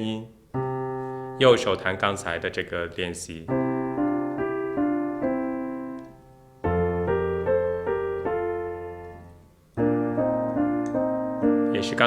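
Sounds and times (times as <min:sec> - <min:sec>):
blues piano chords: 0:00.0 - 0:12.0.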